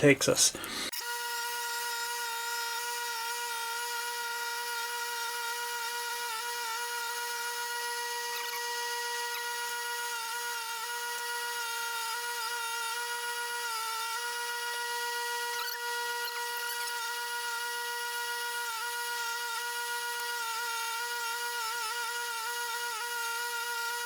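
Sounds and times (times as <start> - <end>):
power tool motor whining: 0.6 - 24.0.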